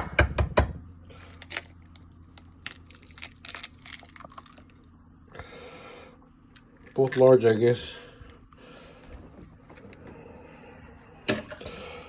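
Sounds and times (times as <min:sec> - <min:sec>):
eggshells crackling and crunching: 0:01.1 - 0:05.0, 0:06.4 - 0:07.4.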